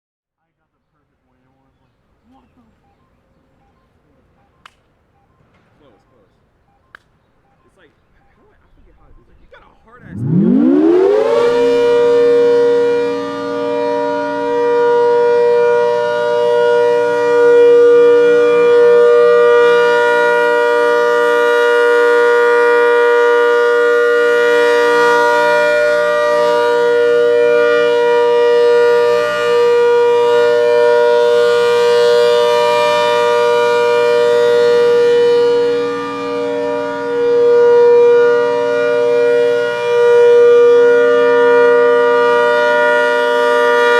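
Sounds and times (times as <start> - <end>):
warning siren winding up: 10.0 - 43.9.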